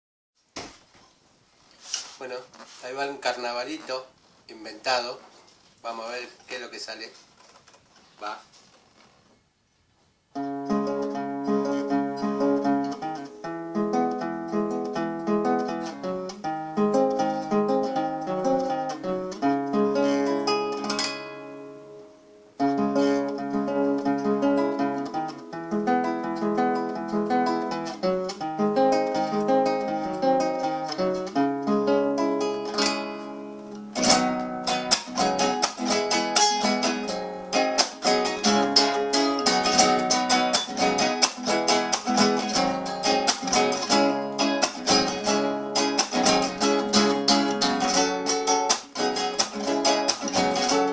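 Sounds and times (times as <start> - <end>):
acoustic guitar picking and strumming: 10.3 - 50.9.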